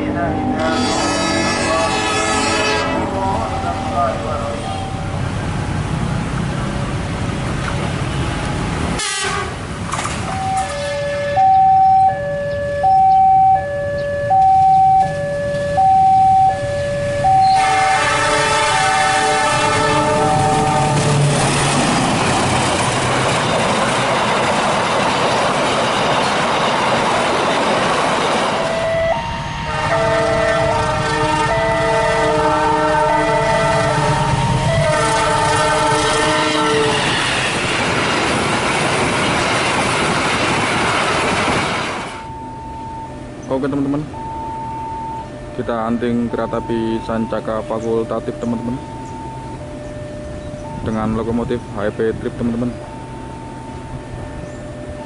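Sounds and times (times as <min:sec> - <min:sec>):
train rumbling past: 0:00.0 - 0:55.0
train horn: 0:00.2 - 0:04.9, 0:09.0 - 0:09.6, 0:17.3 - 0:21.3, 0:28.6 - 0:37.2.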